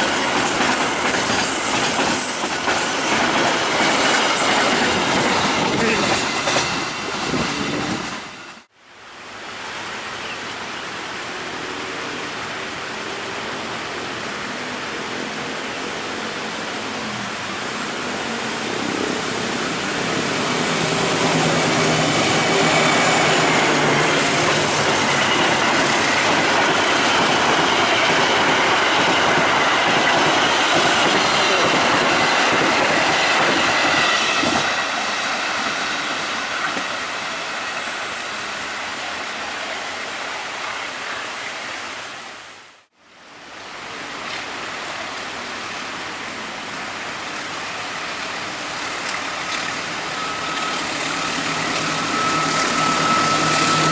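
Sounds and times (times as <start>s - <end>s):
train wheels rumbling on rails: 0.0s - 8.7s, 13.9s - 41.0s, 47.3s - 53.9s
steady rail noise rumble: 10.9s - 42.6s, 43.3s - 53.9s
faint high squeal: 50.0s - 53.9s.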